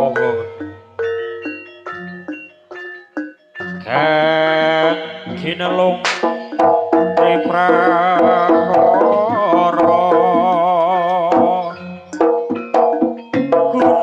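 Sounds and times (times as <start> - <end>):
person singing: 3.7 - 12.2, 13.4 - 14.0
hand-drum strokes: 5.3 - 14.0.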